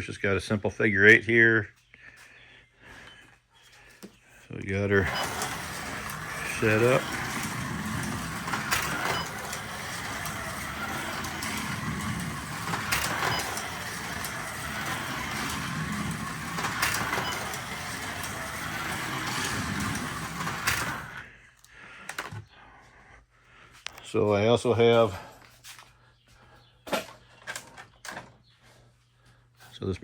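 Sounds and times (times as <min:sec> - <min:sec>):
slot car motor whine: 0:04.8 - 0:21.3.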